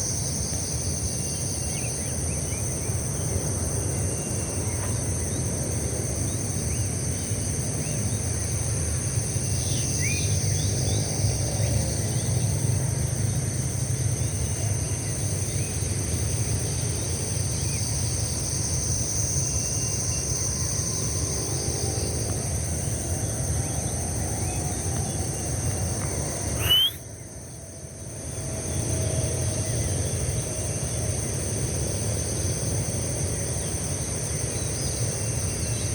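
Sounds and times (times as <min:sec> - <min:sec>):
high-pitched insect chorus: 0:00.0 - 0:35.9
short bird chirps: 0:26.6 - 0:27.0.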